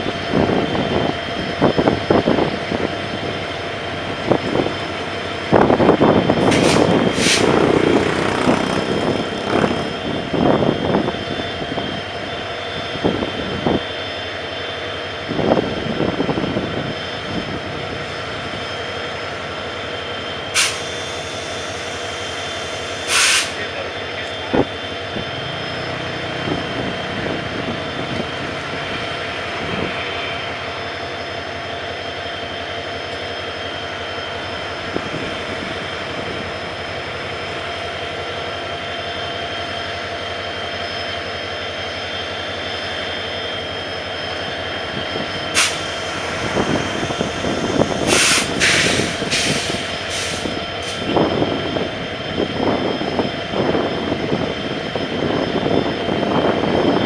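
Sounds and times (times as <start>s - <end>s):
diesel locomotive engine running: 0.0s - 57.0s
short hisses of air: 6.5s - 7.6s, 20.6s - 20.9s, 23.1s - 23.6s, 45.6s - 45.8s, 48.1s - 50.4s.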